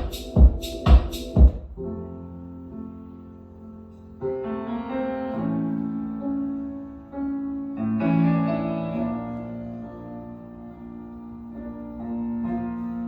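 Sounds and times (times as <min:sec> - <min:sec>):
slow piano chords: 0:00.0 - 0:13.0.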